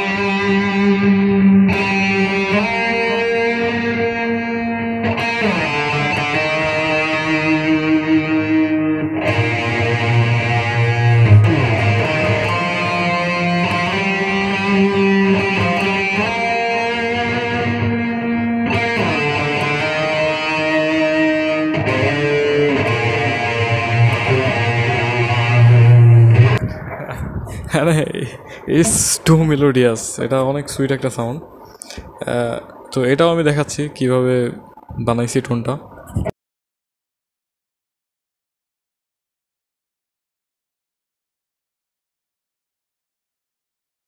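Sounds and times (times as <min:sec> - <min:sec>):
electric guitar melody: 0:00.0 - 0:27.6.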